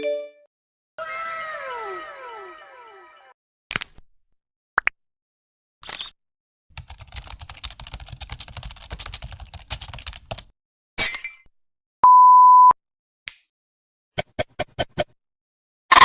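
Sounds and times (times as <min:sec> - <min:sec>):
keyboard typing: 0:06.8 - 0:10.5
censor bleep: 0:12.0 - 0:12.8.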